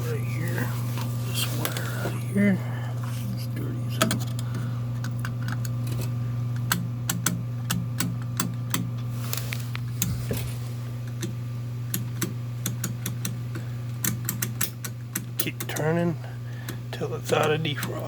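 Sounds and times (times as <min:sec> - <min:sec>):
refrigerator low hum: 0:00.0 - 0:18.0
timer dial clicking: 0:11.1 - 0:15.9, 0:16.6 - 0:18.0.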